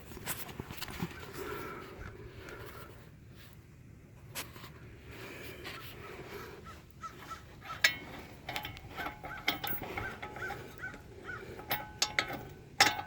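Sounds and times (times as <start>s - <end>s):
metal clicks and taps: 7.7s - 13.0s.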